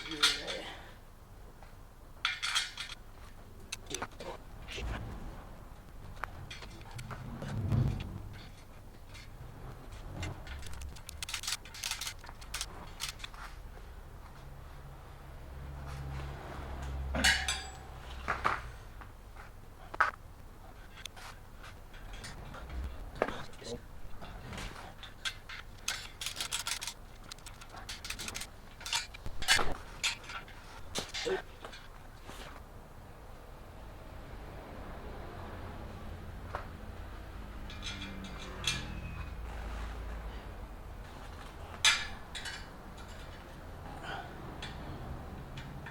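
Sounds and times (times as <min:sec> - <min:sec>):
metal parts rattling and clinking: 0:00.0 - 0:00.7, 0:02.2 - 0:03.0, 0:06.1 - 0:09.3, 0:10.2 - 0:13.4, 0:17.2 - 0:17.9, 0:21.9 - 0:32.0, 0:37.6 - 0:39.8, 0:41.0 - 0:43.6
small metal parts clicking: 0:10.2 - 0:13.4, 0:25.0 - 0:31.9.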